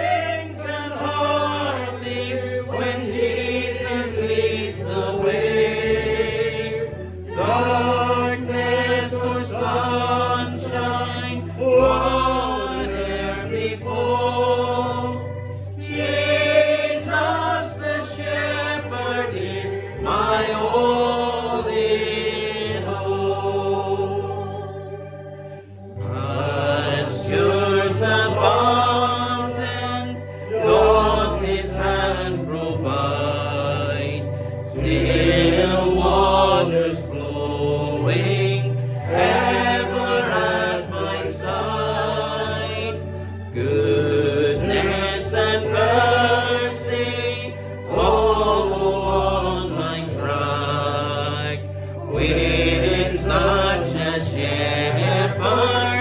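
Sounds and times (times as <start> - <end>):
congregation singing a hymn: 0.0 - 56.0
held bass accompaniment notes: 0.0 - 56.0.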